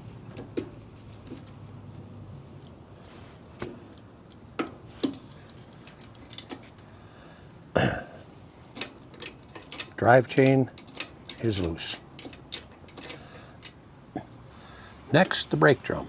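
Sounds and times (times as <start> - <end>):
metal clicks of tools and chain: 1.1 - 1.6, 3.8 - 6.8, 8.8 - 13.8.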